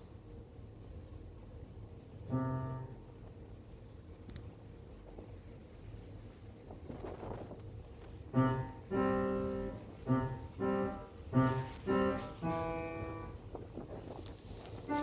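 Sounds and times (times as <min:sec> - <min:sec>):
slow piano melody: 0:02.2 - 0:03.3, 0:08.3 - 0:13.6, 0:14.8 - 0:15.0
faint wind noise: 0:05.0 - 0:15.0.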